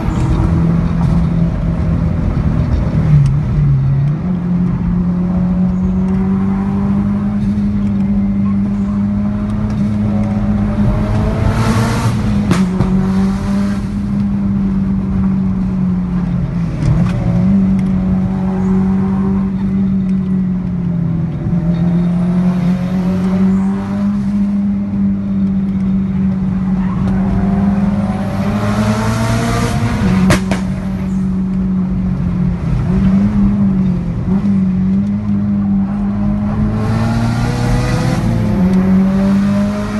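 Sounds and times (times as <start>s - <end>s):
sports car engines revving: 0.0s - 39.9s
sharp exhaust pops: 30.2s - 31.2s.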